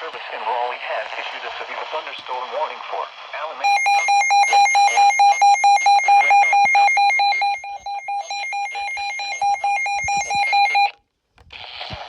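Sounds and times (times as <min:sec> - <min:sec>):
rapid electronic alarm beeping: 0:03.6 - 0:10.9.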